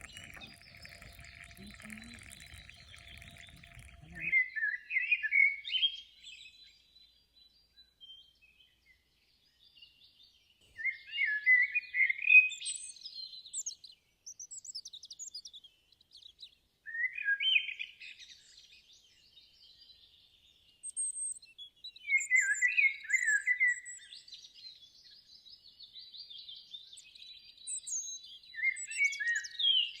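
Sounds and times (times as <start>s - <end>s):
thin high bird chirps: 0.0s - 4.3s.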